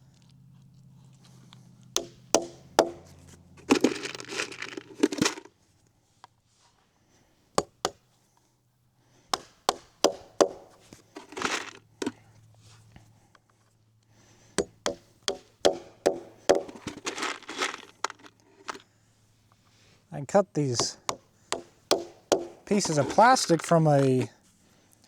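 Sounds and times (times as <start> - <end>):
hammer striking nails: 2.0 - 3.1, 7.6 - 8.0, 9.3 - 11.7, 14.6 - 18.3, 20.8 - 23.4
scuffing and handling noise: 3.0 - 5.5, 10.7 - 13.8, 16.4 - 18.8, 22.4 - 24.6.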